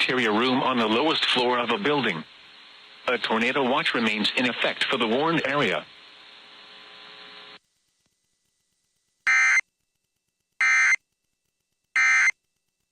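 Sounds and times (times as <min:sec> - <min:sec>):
buzzy digital chirps: 0:09.3 - 0:09.6, 0:10.6 - 0:11.0, 0:12.0 - 0:12.3.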